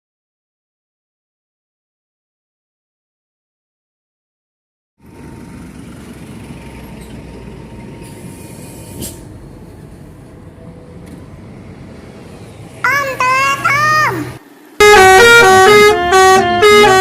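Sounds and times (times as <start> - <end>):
heavy vehicle engine running: 5.0 - 17.0
bus musical horn: 12.9 - 17.0.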